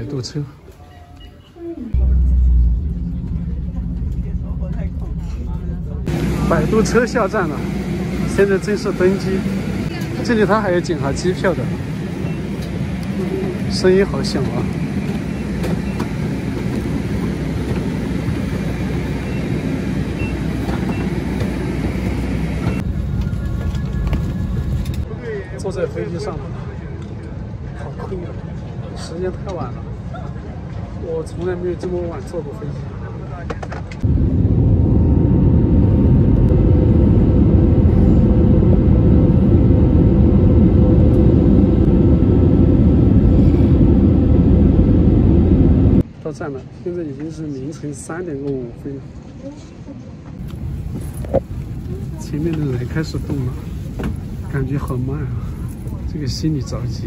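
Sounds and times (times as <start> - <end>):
jet aircraft engine running: 2.0 - 25.1, 33.7 - 46.1, 50.4 - 57.0.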